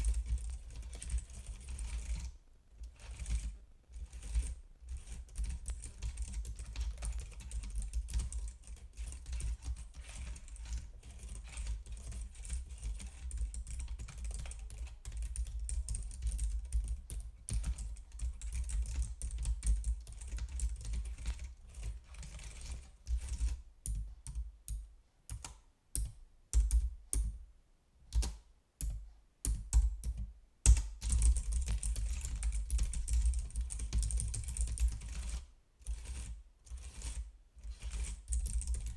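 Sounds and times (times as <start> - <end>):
keyboard typing: 5.2 - 10.8, 11.5 - 21.6, 22.2 - 27.4, 28.1 - 35.3, 37.8 - 38.9.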